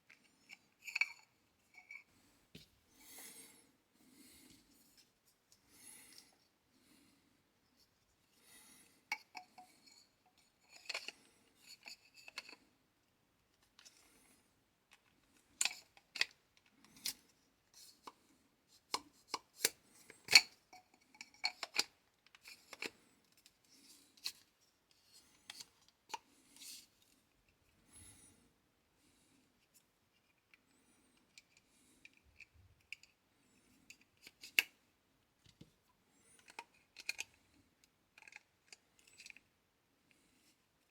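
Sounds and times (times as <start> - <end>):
faint handling rustle: 0.0 - 12.6.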